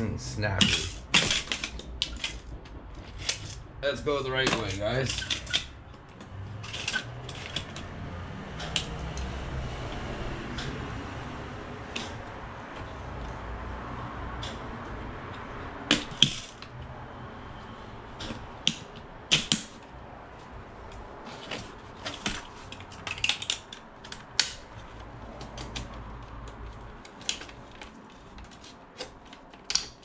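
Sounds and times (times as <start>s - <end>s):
low steady hum: 0.0s - 29.3s
clicks of parts being handled: 8.6s - 9.3s, 20.9s - 30.0s.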